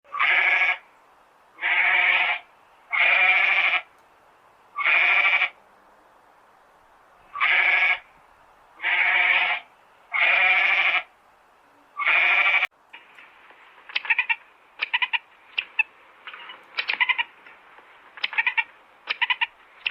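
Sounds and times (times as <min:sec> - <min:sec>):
farm animal bleating: 0:00.1 - 0:00.9, 0:01.6 - 0:03.9, 0:04.8 - 0:05.6, 0:07.3 - 0:08.1, 0:08.8 - 0:11.1, 0:11.9 - 0:12.7, 0:16.3 - 0:17.3.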